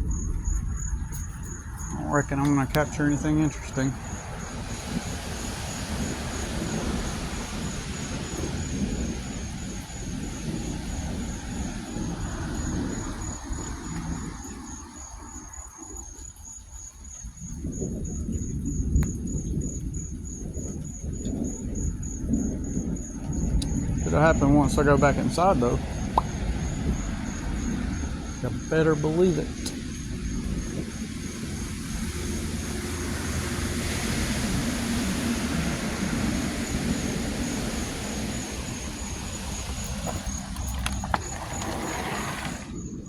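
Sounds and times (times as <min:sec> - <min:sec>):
low rumbling noise: 0:00.0 - 0:14.4
crickets chirping: 0:00.0 - 0:43.0.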